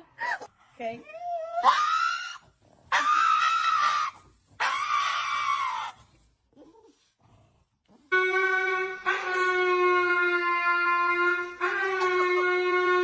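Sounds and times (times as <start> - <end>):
dog screaming: 1.5 - 6.0.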